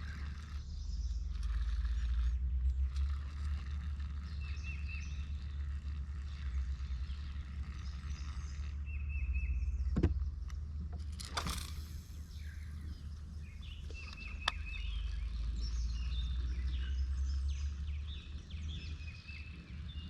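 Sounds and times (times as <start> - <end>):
steady low rumble: 0.0 - 20.0
bird chirping: 4.1 - 11.0, 11.7 - 20.0.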